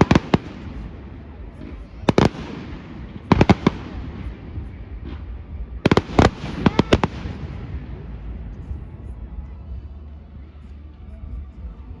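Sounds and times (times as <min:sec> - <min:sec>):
fireworks bangs: 0:00.0 - 0:08.5
crowd rumble: 0:00.0 - 0:12.0.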